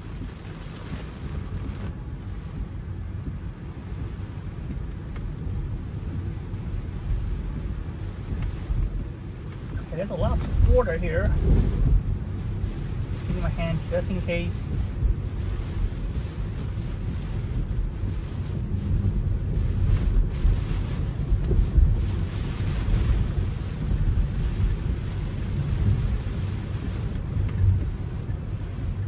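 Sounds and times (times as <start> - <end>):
rain: 0.0 - 29.0
tyres rumbling on wet road: 0.0 - 29.0.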